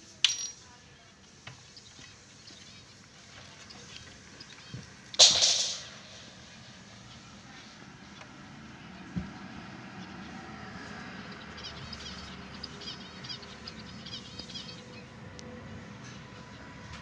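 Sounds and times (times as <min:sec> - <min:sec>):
small bird twittering: 0:10.0 - 0:15.1.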